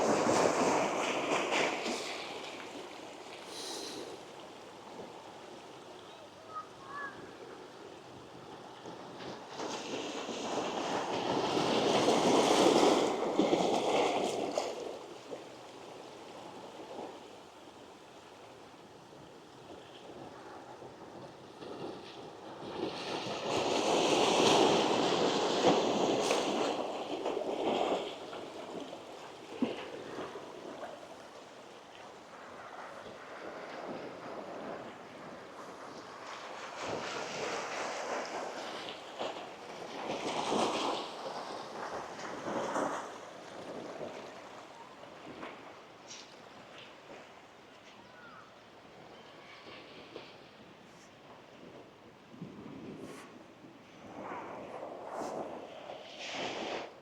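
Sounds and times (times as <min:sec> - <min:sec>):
sea waves breaking on beach: 0:00.0 - 0:06.0, 0:08.8 - 0:18.7, 0:21.0 - 0:47.6.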